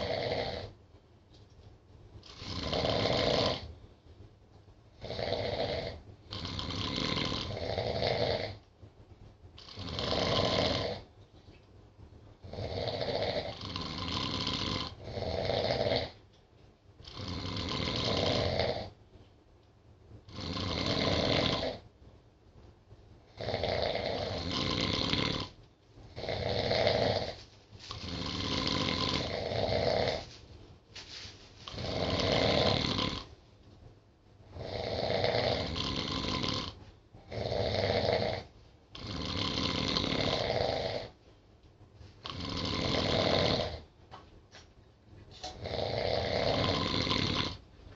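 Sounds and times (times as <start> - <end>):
people snoring: 0.0 - 0.7, 2.3 - 3.7, 5.0 - 8.6, 9.6 - 11.0, 12.4 - 16.2, 17.1 - 19.0, 20.3 - 21.8, 23.4 - 25.6, 26.2 - 30.3, 31.7 - 33.3, 34.5 - 41.2, 42.2 - 43.9, 45.5 - 47.6.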